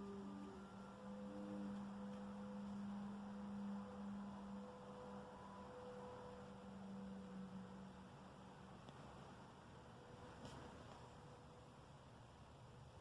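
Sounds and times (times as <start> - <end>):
faint high tone: 0.0 - 8.9
low droning hum: 0.0 - 13.0.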